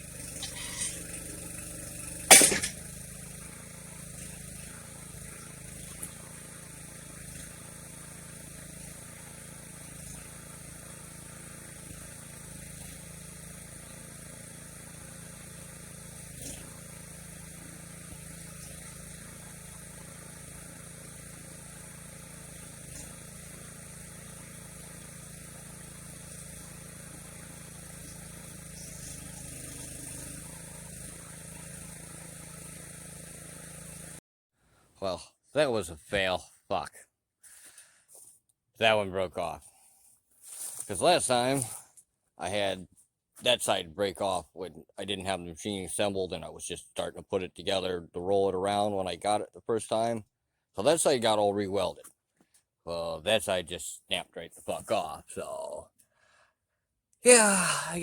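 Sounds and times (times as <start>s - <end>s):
backhoe engine running: 0.0s - 34.2s
sharp loud bang: 2.3s - 2.8s.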